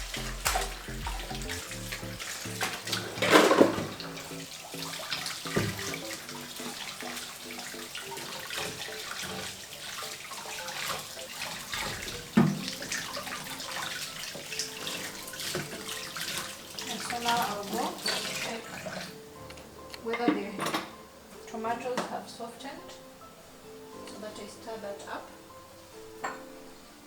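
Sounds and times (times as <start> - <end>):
water splash: 0.0 - 19.1
tap water running into sink: 0.0 - 19.2.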